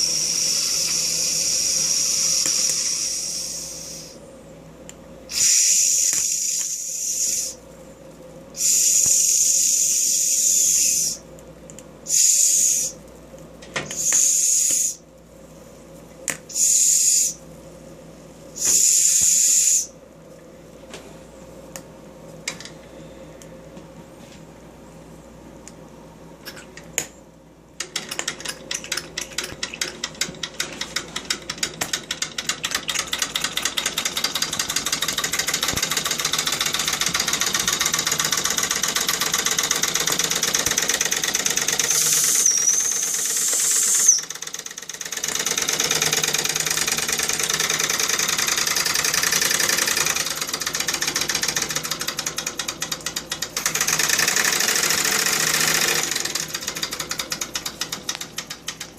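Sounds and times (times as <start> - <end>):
toy steam engine chuffing: 5.3 - 7.6, 12.1 - 13.0, 32.2 - 58.9.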